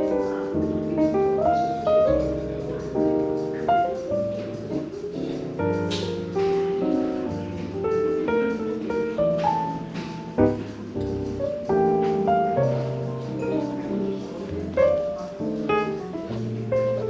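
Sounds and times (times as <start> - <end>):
jazz piano: 0.0 - 17.0.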